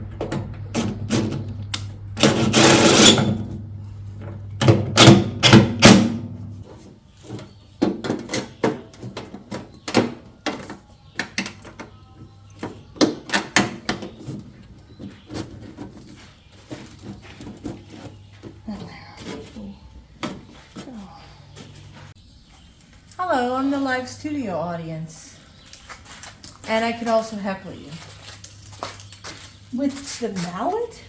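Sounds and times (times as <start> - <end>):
sheet metal knocks and clanks: 4.6 - 6.5.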